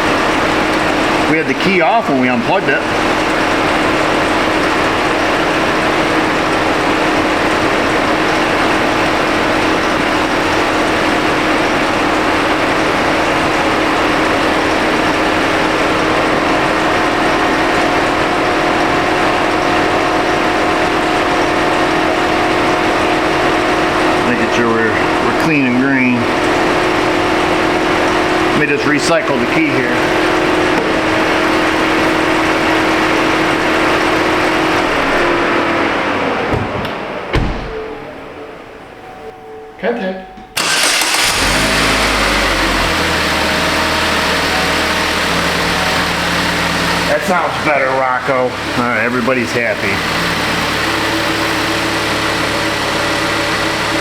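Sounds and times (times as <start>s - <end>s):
car engine idling: 0.0s - 39.2s, 40.5s - 54.0s
electric cooling fans running: 0.0s - 54.0s
sharp knock: 36.5s - 37.9s.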